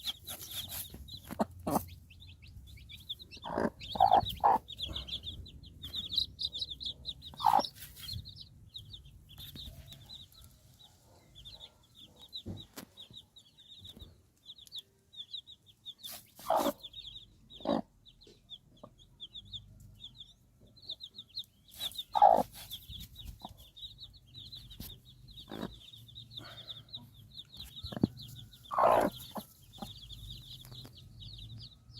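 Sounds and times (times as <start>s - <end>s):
rapid high-pitched chirping: 0.0s - 2.0s
chickens clucking: 0.0s - 8.3s, 16.0s - 19.9s, 20.6s - 31.6s.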